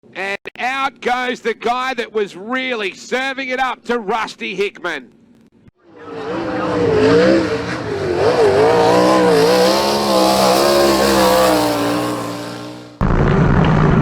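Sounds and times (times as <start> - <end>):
race car engine revving: 5.8 - 13.0.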